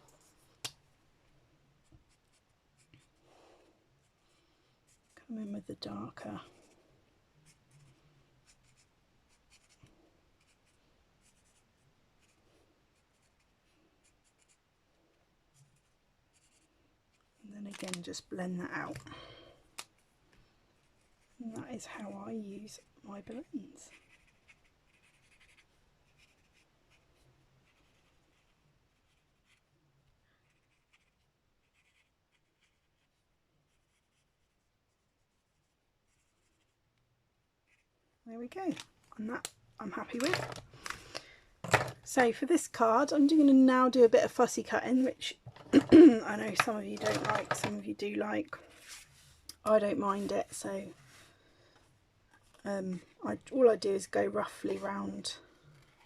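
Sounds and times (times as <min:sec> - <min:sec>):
marker scratching on cardstock: 0:23.9 - 0:27.0, 0:27.6 - 0:29.6, 0:30.4 - 0:33.1, 0:33.7 - 0:36.8.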